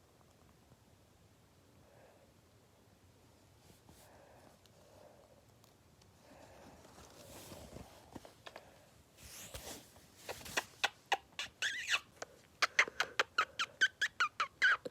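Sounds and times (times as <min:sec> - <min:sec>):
hamster squeaking: 0:10.3 - 0:14.9.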